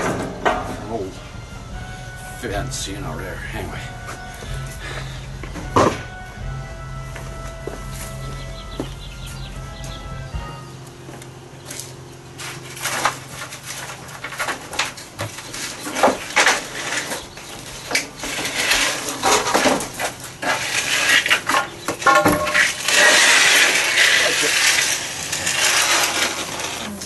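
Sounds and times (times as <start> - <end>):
scrap wood clattering and knocking: 0.0 - 0.9, 3.8 - 6.2, 11.7 - 27.0.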